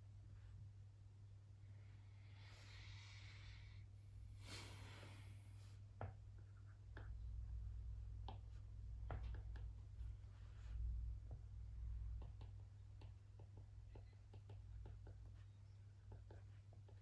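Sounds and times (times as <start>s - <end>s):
low electrical hum: 0.0s - 17.0s
scratchy writing on a desk: 12.1s - 17.0s.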